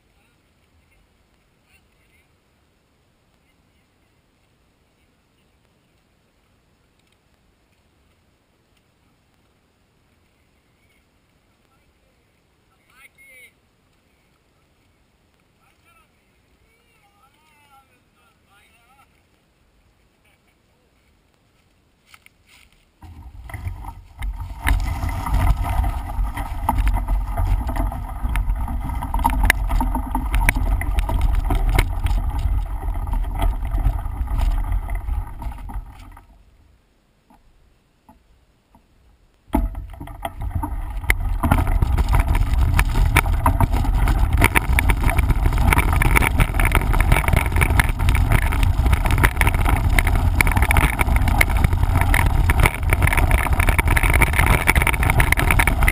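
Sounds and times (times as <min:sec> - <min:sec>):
bike rattles and knocks: 0:23.0 - 0:36.4, 0:39.5 - 0:55.9
wind rumble on microphone: 0:23.0 - 0:36.4, 0:39.5 - 0:55.9.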